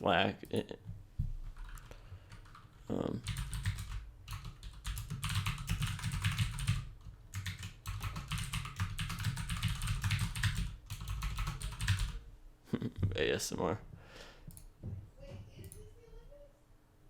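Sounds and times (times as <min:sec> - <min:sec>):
fast typing on a keyboard: 0:01.6 - 0:12.2.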